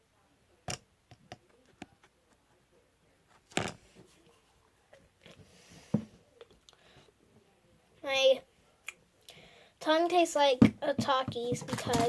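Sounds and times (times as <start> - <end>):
clicks and knocks of handled items: 10.6 - 12.0.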